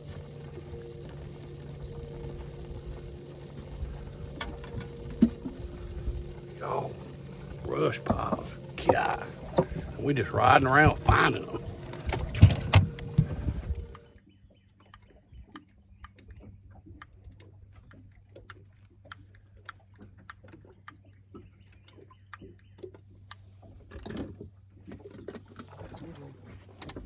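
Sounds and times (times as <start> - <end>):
faint steady low hum: 0.0 - 14.2.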